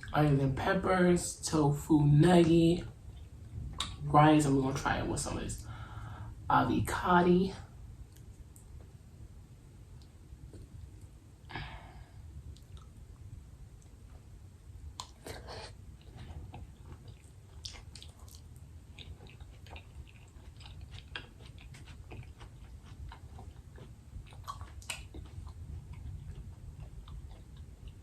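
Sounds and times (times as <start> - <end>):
low steady hum: 0.0 - 28.0
person chewing: 12.5 - 13.1, 14.9 - 28.0.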